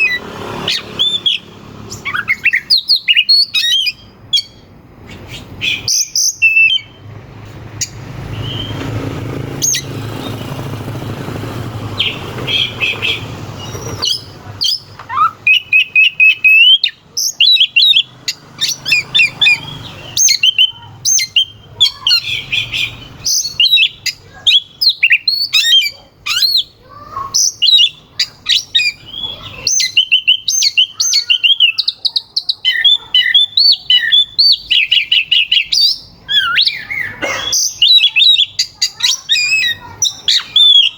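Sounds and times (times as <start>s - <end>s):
bird singing whistles and trills: 0.0s - 7.0s, 7.8s - 8.8s, 12.0s - 40.9s.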